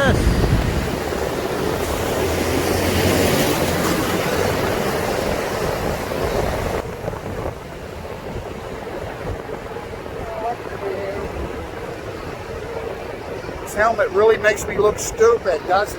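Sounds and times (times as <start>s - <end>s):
traffic noise: 0.0s - 6.8s
wind rushing over microphone: 0.0s - 15.9s.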